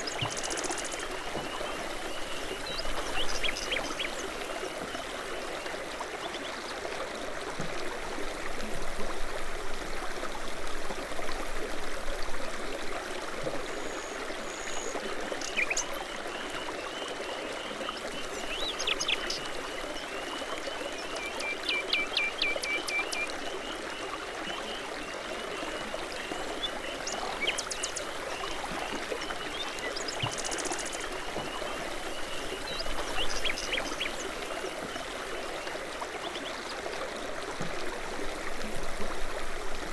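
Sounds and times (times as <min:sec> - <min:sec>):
babbling brook: 0:00.0 - 0:39.9
songbirds chirping and trilling: 0:26.2 - 0:35.4.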